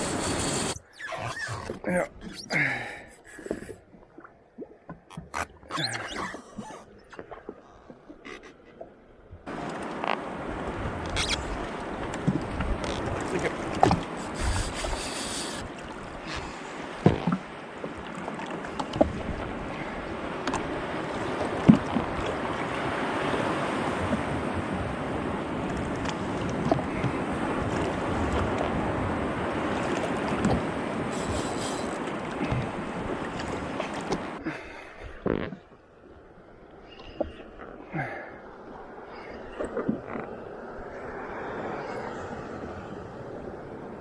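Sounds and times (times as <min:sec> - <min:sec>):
splashing hiss: 0:00.0 - 0:00.8, 0:14.1 - 0:15.7
water lapping against hull: 0:00.0 - 0:44.0.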